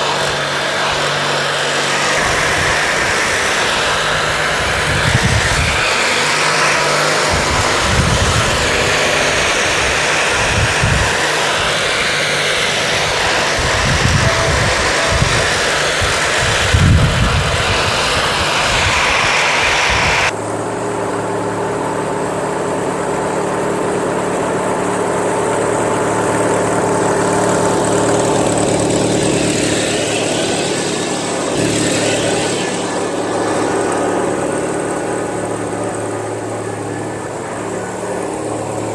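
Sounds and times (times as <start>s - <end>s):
wind buffeting microphone: 0.0s - 20.4s
lawn tractor engine running: 0.0s - 38.9s.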